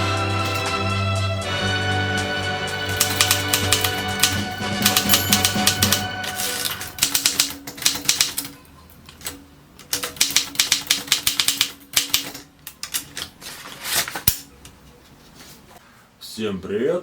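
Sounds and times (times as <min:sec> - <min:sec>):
background music: 0:00.0 - 0:07.6
typewriter keys clacking: 0:02.8 - 0:13.3.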